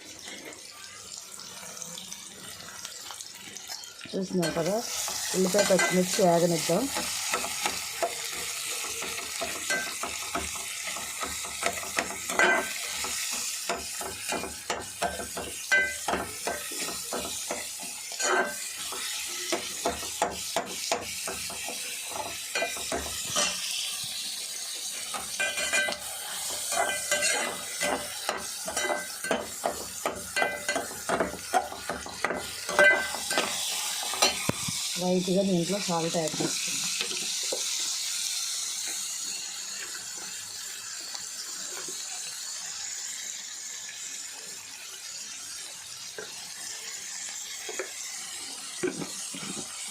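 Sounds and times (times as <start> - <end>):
onions sizzling in hot oil: 0.0 - 49.9
spoon scraping a pan: 4.4 - 24.0, 24.9 - 34.8.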